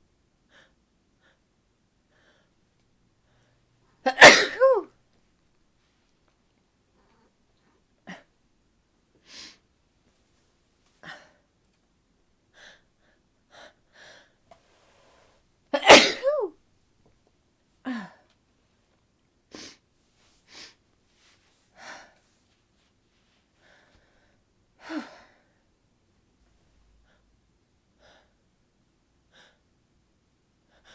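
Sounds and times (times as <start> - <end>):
woman sneezing: 4.1 - 4.9, 15.8 - 16.5.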